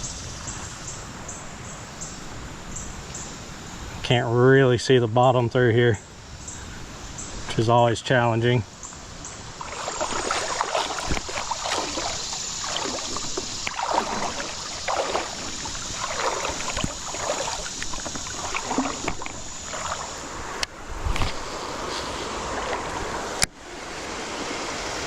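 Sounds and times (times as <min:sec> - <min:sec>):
flowing creek rushing: 0:08.6 - 0:25.0
water sloshing from wading legs: 0:08.9 - 0:23.4.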